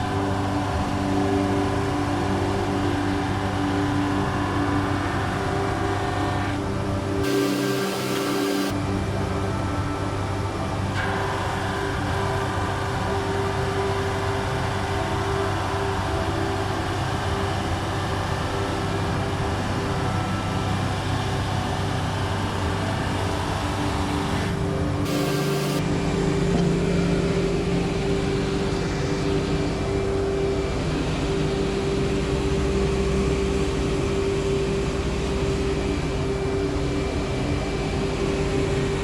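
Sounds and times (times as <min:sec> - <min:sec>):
woodworking machine running: 0:25.1 - 0:25.8.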